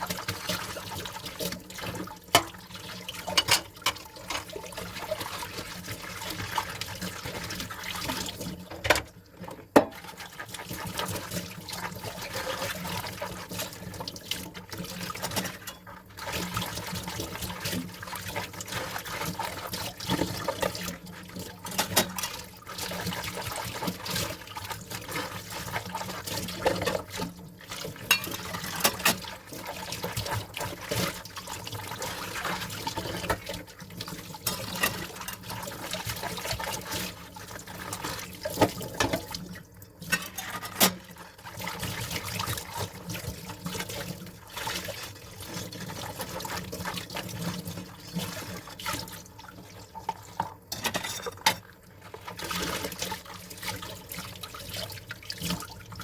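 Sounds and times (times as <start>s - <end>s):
tap water splashing in sink: 0.0s - 56.0s
dishes clinking: 3.3s - 4.6s, 28.1s - 29.0s, 40.1s - 41.0s, 50.7s - 51.6s.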